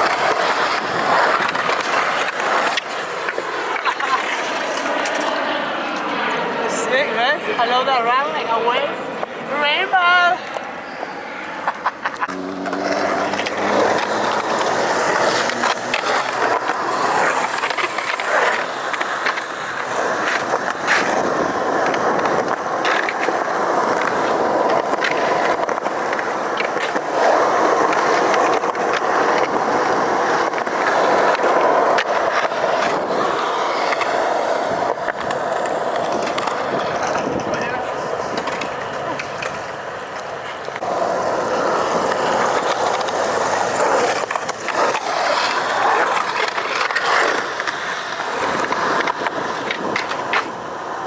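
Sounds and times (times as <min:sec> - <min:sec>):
skateboard wheels rolling on concrete: 0:00.0 - 0:51.0
skateboard clacks and knocks: 0:11.8 - 0:51.0.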